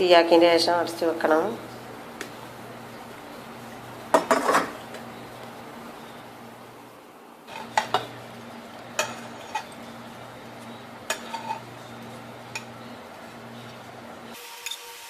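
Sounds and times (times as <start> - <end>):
steady low hum: 0.0 - 14.4
metal utensils clinking on pan: 7.5 - 8.2, 8.8 - 10.0, 10.6 - 13.8.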